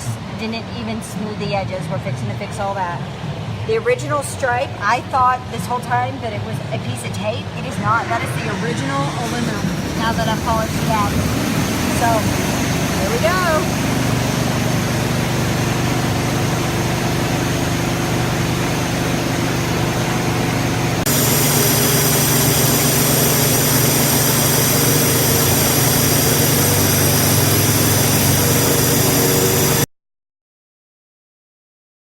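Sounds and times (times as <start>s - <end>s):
generator engine running: 7.2s - 29.9s
orbital sander on metal: 21.1s - 29.9s.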